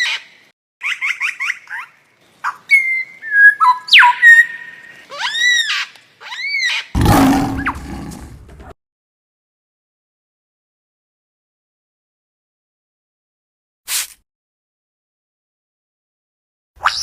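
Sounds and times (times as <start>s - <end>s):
whistling bird calls: 2.7s - 6.8s
harsh low animal call: 7.0s - 8.6s.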